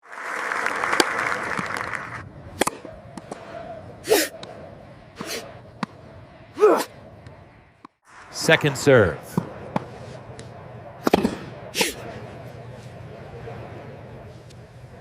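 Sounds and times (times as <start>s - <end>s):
crowd noise: 0.0s - 15.0s
racket striking tennis ball: 2.5s - 6.1s, 9.2s - 12.1s
person sneezing: 4.0s - 4.3s.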